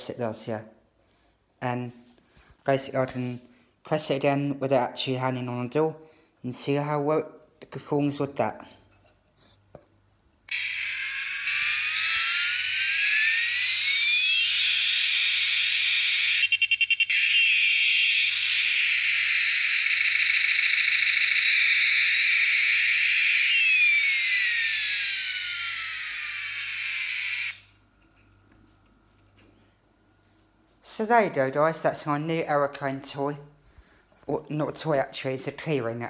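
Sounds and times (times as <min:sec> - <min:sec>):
toy jet engine sound effect: 0:10.5 - 0:27.7.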